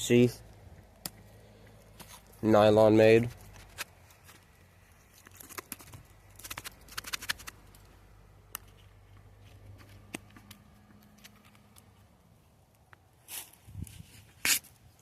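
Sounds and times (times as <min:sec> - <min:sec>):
clicks and taps of nylon sheath: 0:01.0 - 0:02.4, 0:05.2 - 0:12.0.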